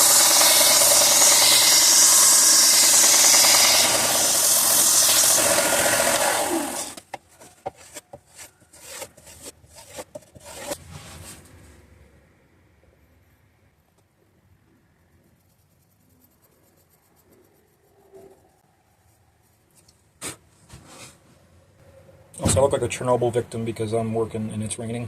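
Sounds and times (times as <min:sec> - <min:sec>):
rubbing and tapping sounds: 0:07.0 - 0:11.6.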